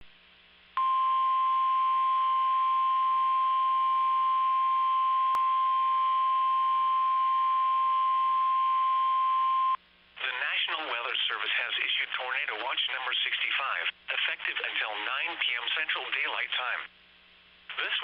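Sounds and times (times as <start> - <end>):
high warning alarm tone: 0.8 - 9.8.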